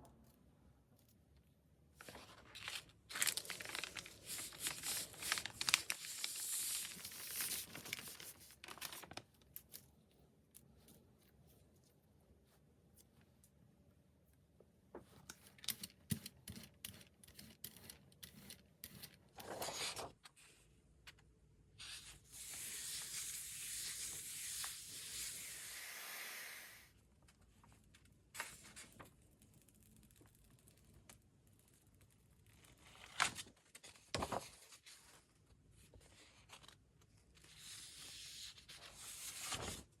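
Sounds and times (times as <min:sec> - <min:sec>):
paper rustling: 0:02.0 - 0:09.8, 0:19.4 - 0:20.6, 0:27.3 - 0:29.1, 0:32.6 - 0:35.3, 0:36.0 - 0:40.0.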